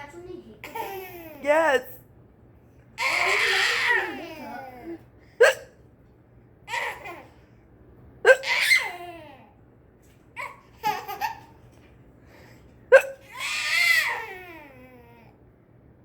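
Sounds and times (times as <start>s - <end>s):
sharp hiccups: 5.4s - 5.8s, 8.3s - 8.6s, 12.9s - 13.2s
baby laughing: 6.7s - 7.4s, 8.3s - 9.5s, 10.4s - 11.6s.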